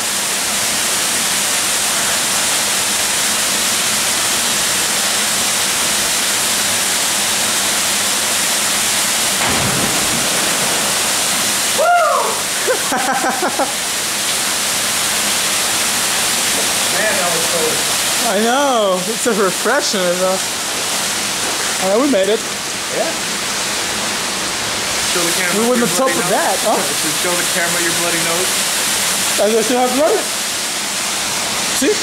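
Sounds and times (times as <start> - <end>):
waterfall rushing: 0.0 - 32.0
person shouting: 11.8 - 12.5.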